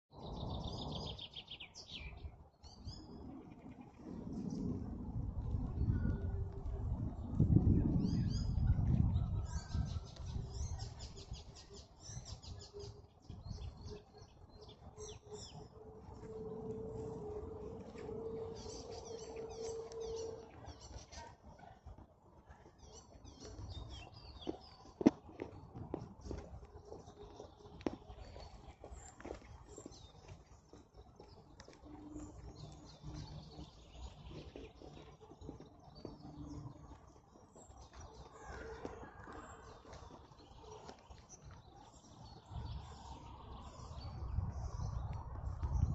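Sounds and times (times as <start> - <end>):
low rumbling noise: 2.9 - 11.0, 13.4 - 20.9.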